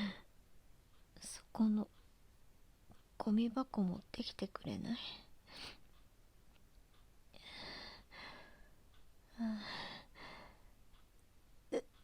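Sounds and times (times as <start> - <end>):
woman breathing heavily: 0.0 - 0.4, 7.3 - 11.0.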